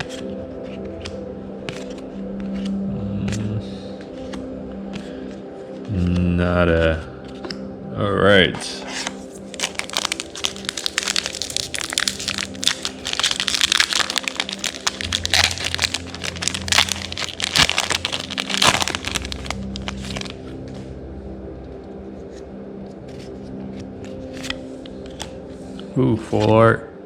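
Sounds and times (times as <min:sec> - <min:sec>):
foil wrapper crinkling and tearing: 0:09.3 - 0:20.4.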